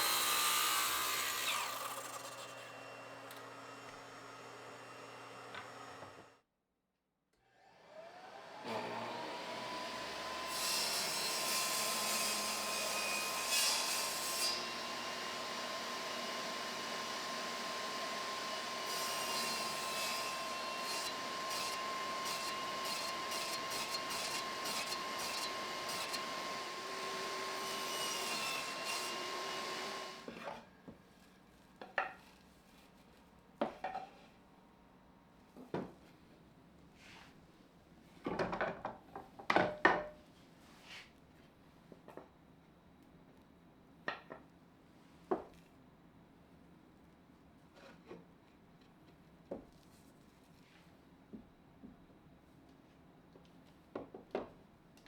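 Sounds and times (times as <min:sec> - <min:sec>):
power tool whining cutting wood: 0:00.0 - 0:06.4, 0:07.6 - 0:30.6.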